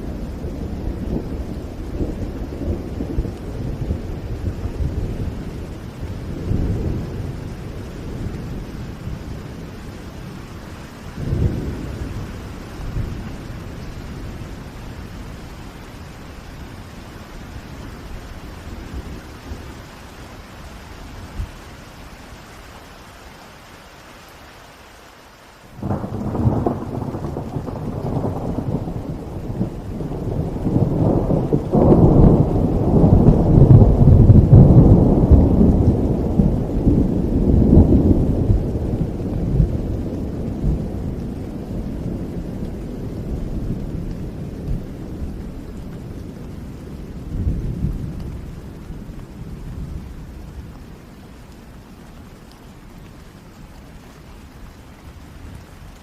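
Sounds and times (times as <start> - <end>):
rolling thunder: 0.0 - 15.4, 25.8 - 50.8
steady rain: 0.0 - 56.0.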